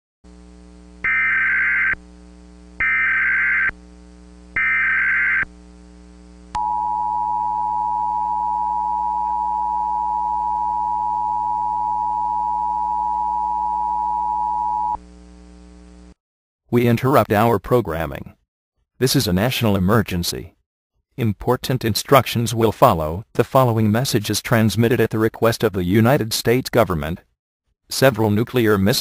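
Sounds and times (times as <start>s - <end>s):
low hum: 6.2s - 15.9s.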